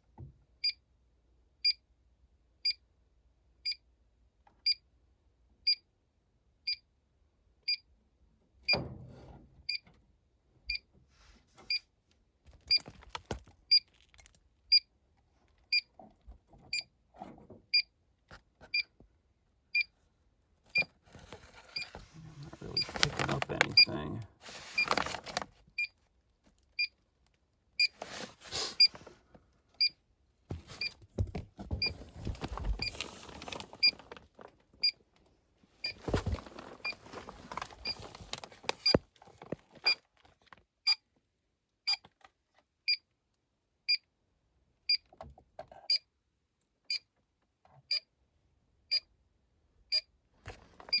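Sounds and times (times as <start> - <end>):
rustling handling noise: 11.1 - 14.6, 20.6 - 25.7, 27.9 - 29.5, 30.5 - 34.8, 35.7 - 40.6.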